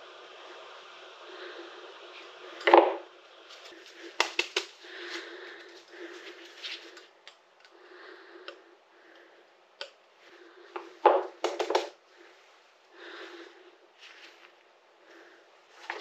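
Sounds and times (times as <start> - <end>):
soft rustling: 3.3 - 7.2, 12.1 - 16.0.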